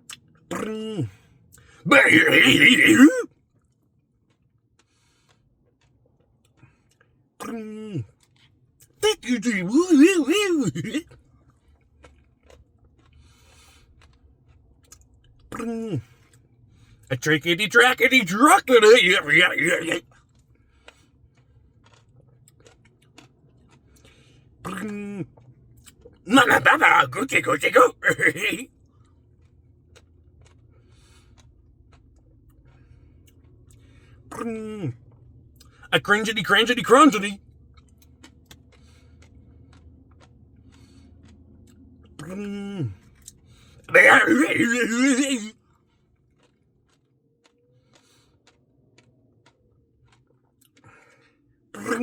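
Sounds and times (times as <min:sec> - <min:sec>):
faint chewing: 0:00.0 - 0:52.0
soft mouth sounds: 0:00.1 - 0:01.1, 0:01.9 - 0:03.3, 0:09.0 - 0:11.0, 0:17.1 - 0:20.0, 0:26.3 - 0:28.6, 0:34.3 - 0:34.8, 0:42.2 - 0:45.5, 0:51.8 - 0:52.0
person speaking: 0:01.9 - 0:03.3, 0:09.0 - 0:11.0, 0:17.1 - 0:20.0, 0:26.3 - 0:28.7, 0:35.9 - 0:37.4, 0:43.9 - 0:45.5, 0:51.8 - 0:52.0.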